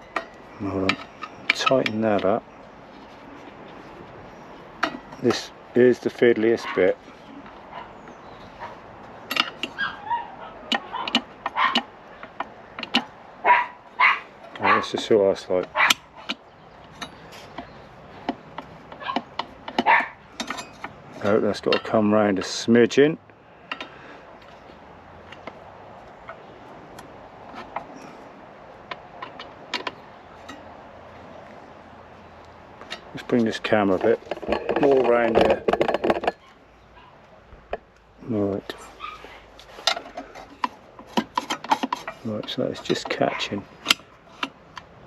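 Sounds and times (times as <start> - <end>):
dog whining and yipping: 9.8 - 11.7.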